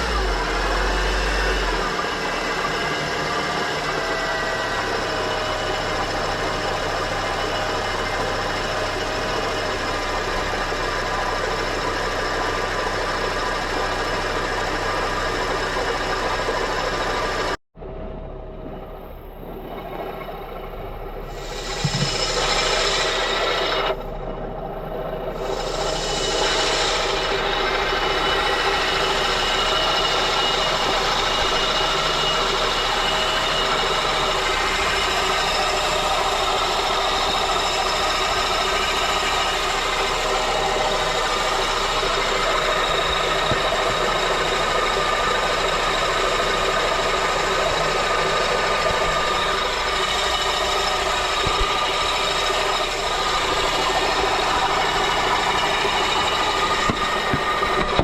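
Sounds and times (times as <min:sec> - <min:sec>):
car engine running: 0:00.0 - 0:58.0
metallic grinding from engine: 0:21.3 - 0:58.0.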